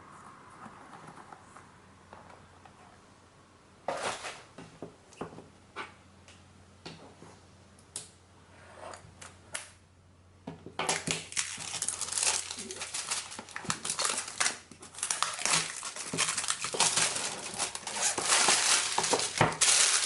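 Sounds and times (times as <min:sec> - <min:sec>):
wrapping rustling: 0:11.3 - 0:20.0
packaging knocks and scrapes: 0:13.0 - 0:20.0.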